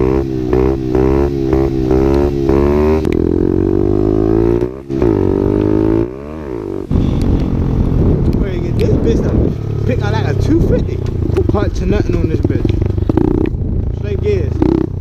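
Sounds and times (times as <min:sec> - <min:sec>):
rough noisy rumble: 0:00.0 - 0:15.0
small motorbike engine buzzing: 0:09.3 - 0:15.0.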